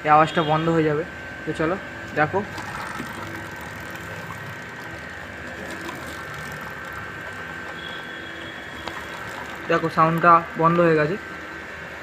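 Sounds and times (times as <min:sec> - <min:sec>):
motorcycle drive chain running: 0:02.5 - 0:11.2.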